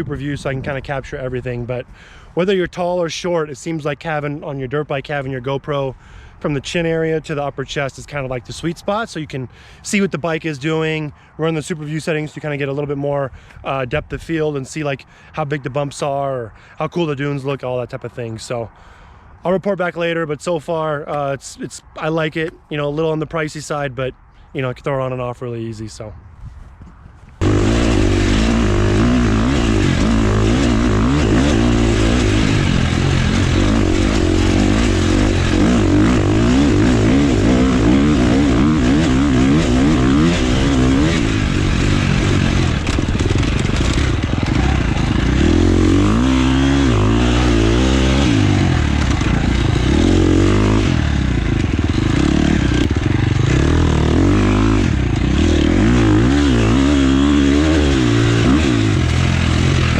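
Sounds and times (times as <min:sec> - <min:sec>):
dirt bike engine revving: 0:27.4 - 0:59.9.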